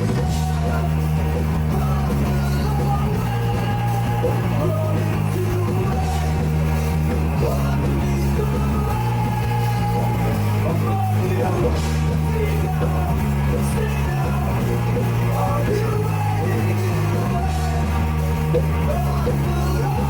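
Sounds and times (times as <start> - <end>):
bass guitar: 0.0 - 20.0
distorted electric guitars: 0.0 - 20.0
drums: 0.0 - 20.0.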